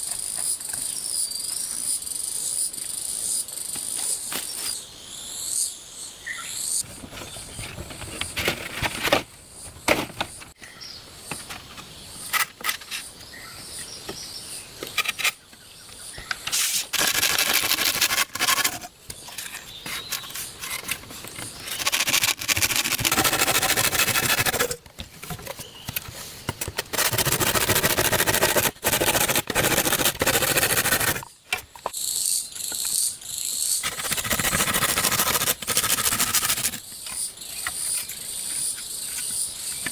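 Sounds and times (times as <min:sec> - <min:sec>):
birds chirping: 0:09.4 - 0:16.6, 0:19.0 - 0:22.1, 0:24.6 - 0:26.9, 0:31.2 - 0:39.9
rasping scraping noise: 0:16.4 - 0:31.3, 0:33.8 - 0:39.4.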